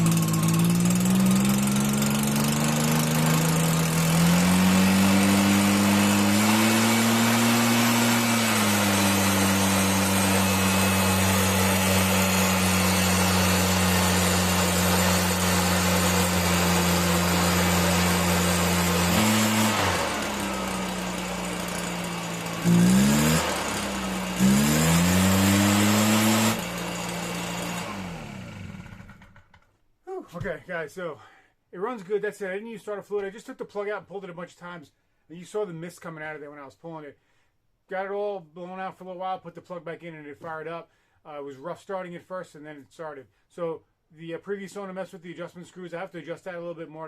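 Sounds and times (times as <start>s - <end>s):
leaf blower engine revving: 0.0s - 29.6s.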